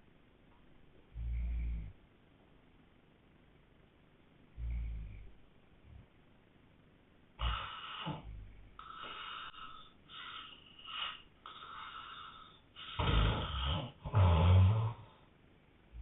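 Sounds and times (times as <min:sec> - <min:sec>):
heavy snoring: 0:01.1 - 0:02.0, 0:04.6 - 0:05.3, 0:07.4 - 0:15.2.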